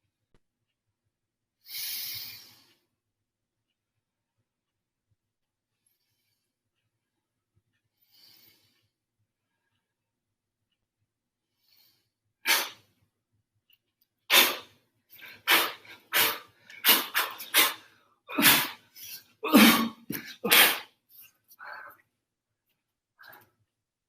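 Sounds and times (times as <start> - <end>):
sharp forceful breath exhalations: 14.3 - 19.3.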